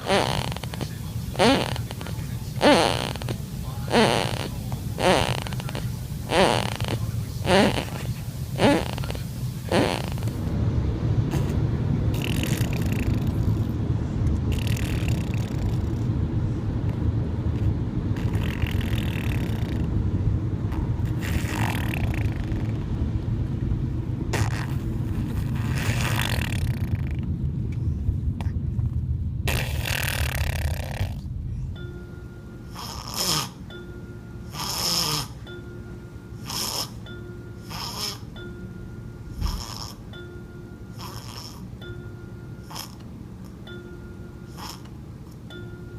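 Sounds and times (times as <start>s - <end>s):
baby snoring: 0.0s - 10.4s, 11.3s - 13.7s, 14.5s - 16.1s, 18.2s - 19.9s, 20.7s - 22.8s, 24.3s - 27.3s, 29.5s - 31.3s, 32.6s - 33.8s, 34.4s - 35.5s, 36.4s - 38.4s, 39.3s - 40.2s, 40.9s - 41.9s, 42.6s - 43.0s, 44.5s - 44.9s
steady low rumble: 0.0s - 45.9s
gentle chiming music: 31.8s - 32.8s, 33.6s - 34.6s, 35.4s - 39.4s, 40.0s - 41.1s, 41.7s - 42.8s, 43.6s - 44.6s, 45.4s - 45.9s.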